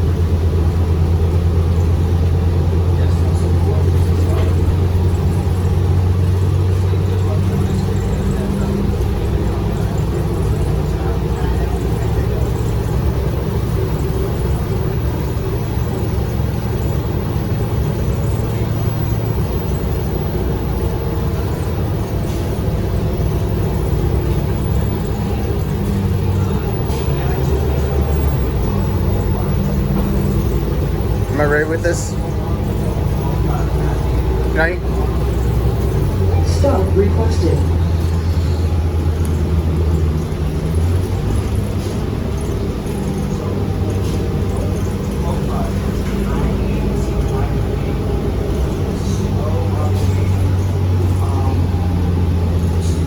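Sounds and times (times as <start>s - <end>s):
bus engine rumbling: 0.0s - 53.0s.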